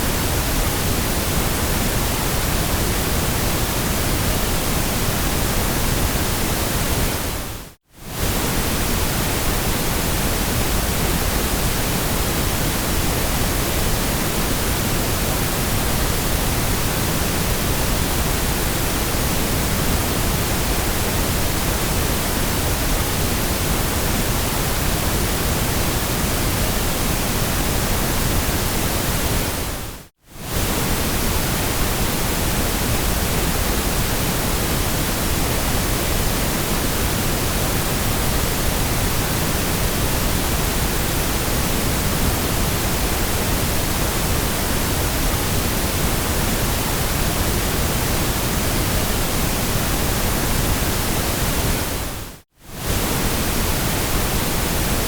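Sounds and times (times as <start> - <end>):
white noise hiss: 0.0 - 55.0.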